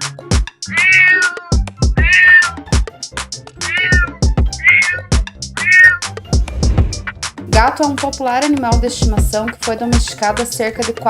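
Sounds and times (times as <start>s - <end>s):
music with steady beat: 0.0s - 0.7s, 1.5s - 11.0s
cat meowing: 0.6s - 2.6s, 3.6s - 6.1s.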